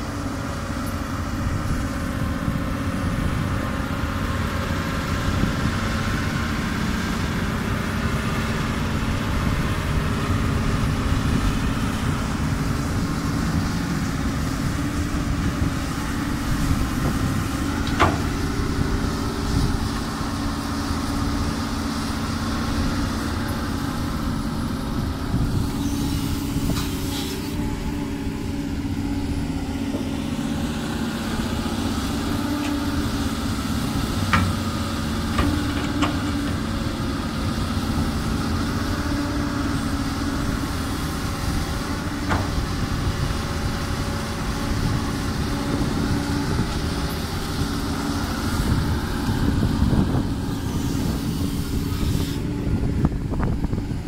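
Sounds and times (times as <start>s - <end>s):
excavator diesel engine running: 0.0s - 54.0s.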